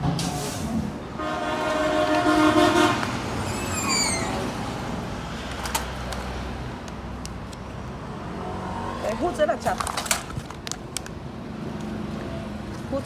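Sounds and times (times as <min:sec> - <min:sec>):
loud horn-like tone: 0:01.2 - 0:03.1.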